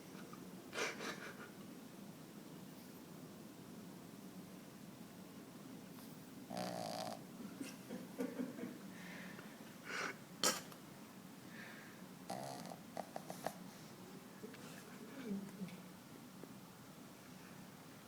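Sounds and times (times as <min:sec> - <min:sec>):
puppy snoring: 0:06.5 - 0:07.3, 0:12.3 - 0:13.9
soft snuffles: 0:12.3 - 0:14.0.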